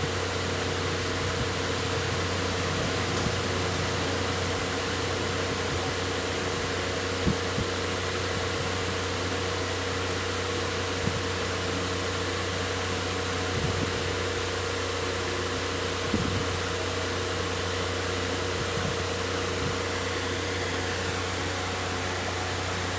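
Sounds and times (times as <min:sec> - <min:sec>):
electric fan running: 0:00.0 - 0:22.9.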